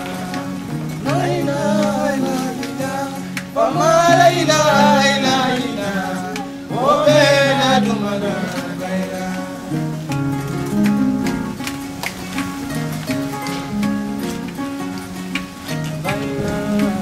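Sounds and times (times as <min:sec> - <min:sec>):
person singing: 0:00.0 - 0:11.0, 0:15.7 - 0:17.0
plucked string accompaniment: 0:00.0 - 0:17.0.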